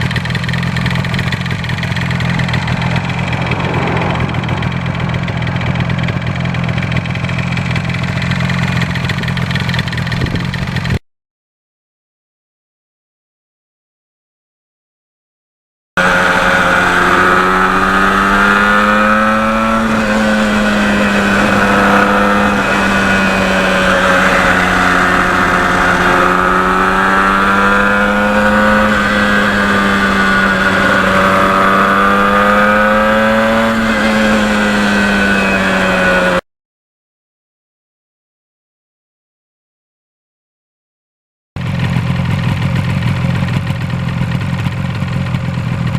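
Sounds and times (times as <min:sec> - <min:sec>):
two-stroke motorcycle engine running: 0:00.0 - 0:11.0, 0:16.0 - 0:36.4, 0:41.6 - 0:45.9.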